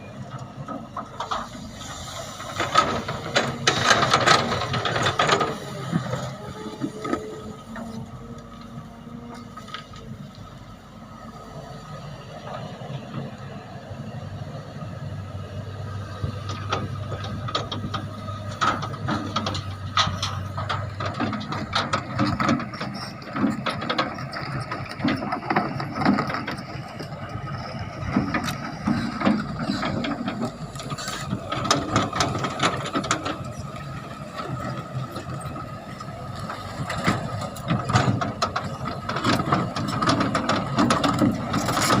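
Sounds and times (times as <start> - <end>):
excavator high whine: 0.0 - 42.0
metallic clanks and knocks: 16.5 - 35.6, 36.4 - 42.0.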